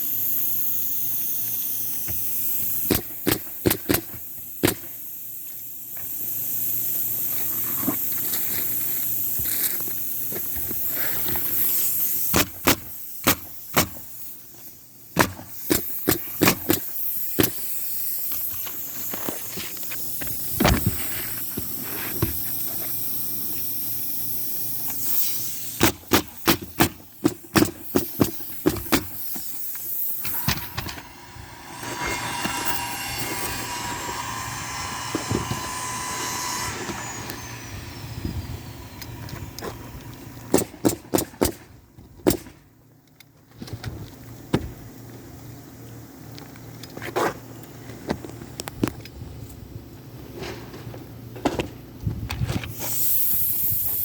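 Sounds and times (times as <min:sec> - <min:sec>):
steady scraping noise: 0:29.4 - 0:41.2
hammer striking nails: 0:40.5 - 0:41.6.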